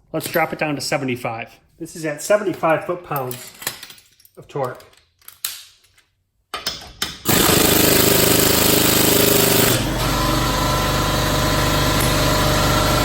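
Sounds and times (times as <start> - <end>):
air impact ratchet hammering: 6.6 - 10.4.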